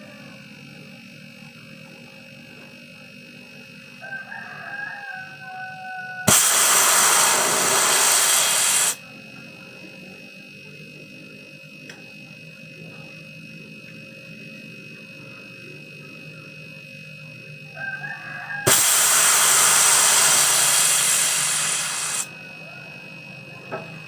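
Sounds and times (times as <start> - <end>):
rooster crowing: 4.0 - 9.0, 17.7 - 20.6, 22.1 - 23.2
compressed air hissing: 6.3 - 9.0, 18.7 - 22.3.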